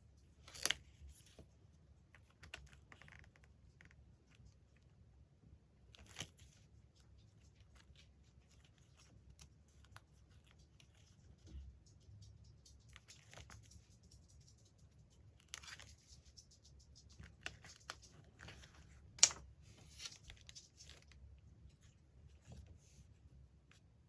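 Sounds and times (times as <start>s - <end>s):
paper rustling: 15.4s - 23.2s.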